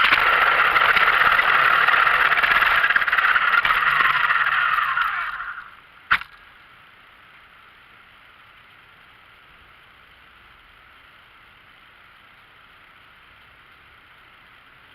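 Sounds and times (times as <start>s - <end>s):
toy car motor whine: 0.0s - 5.8s
faint steady hiss: 0.0s - 14.9s
sharp click: 6.1s - 6.5s.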